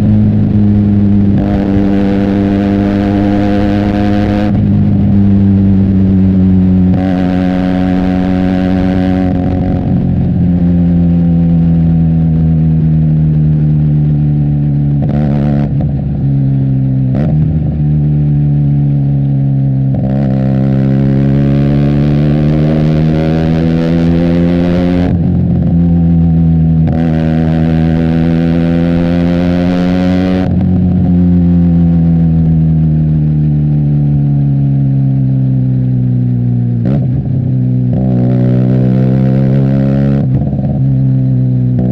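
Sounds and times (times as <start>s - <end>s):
motorcycle engine running: 0.0s - 41.9s.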